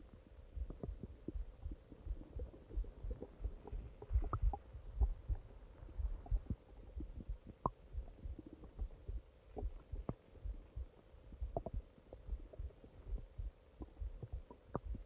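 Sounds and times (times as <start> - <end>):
stomach gurgling: 0.0 - 15.0
stomach pops and squeaks: 2.1 - 5.4, 11.4 - 15.0.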